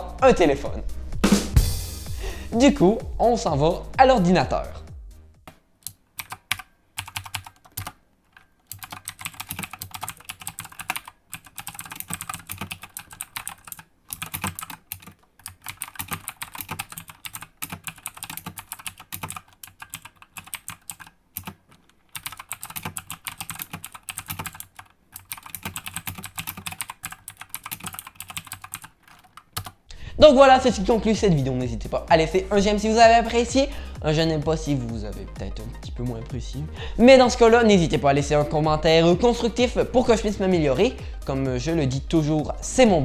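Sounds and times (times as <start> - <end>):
mechanical keyboard typing: 5.8 - 29.8.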